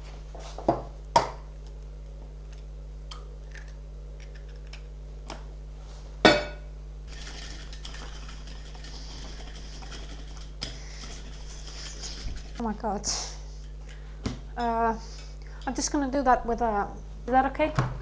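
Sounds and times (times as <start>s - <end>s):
utensils knocking against bowl: 6.3s - 12.6s
whisk scraping bowl: 7.1s - 12.7s.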